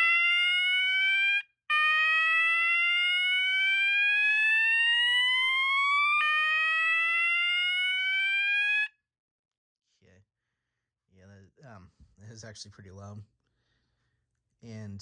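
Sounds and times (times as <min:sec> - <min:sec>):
fire alarm horn sweeping tone: 0:00.0 - 0:08.9.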